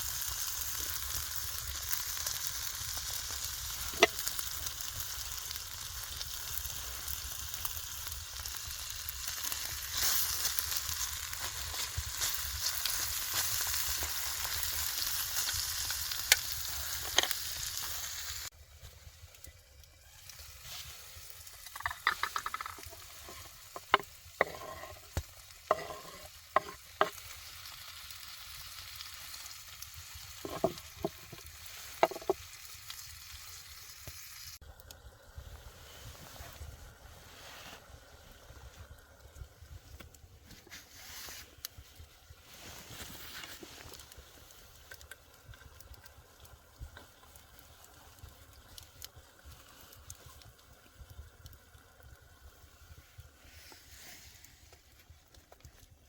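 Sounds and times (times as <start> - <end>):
sharp pops of frying: 0.0 - 18.6, 21.2 - 34.7
food sizzling in a pan: 0.0 - 34.7, 35.4 - 38.9, 39.6 - 55.8
clicks and knocks: 21.6 - 24.8.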